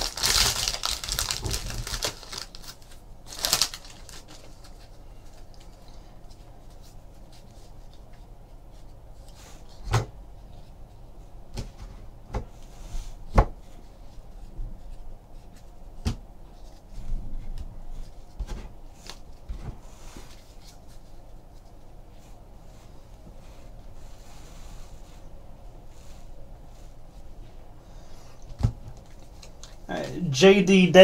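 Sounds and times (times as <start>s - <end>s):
card rustle: 0.0s - 8.3s, 28.9s - 30.3s.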